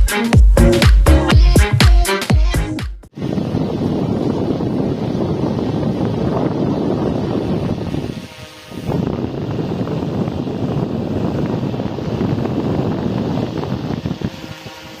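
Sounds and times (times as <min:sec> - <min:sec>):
fan air buffeting microphone: 0:03.1 - 0:15.0.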